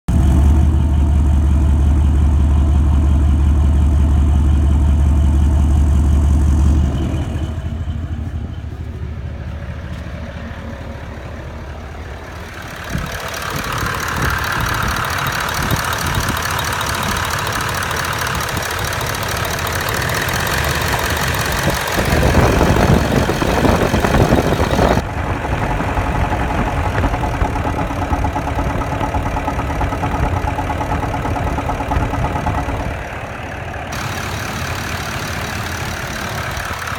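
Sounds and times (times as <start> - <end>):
diesel engine idling with knocking: 0.1 - 36.9.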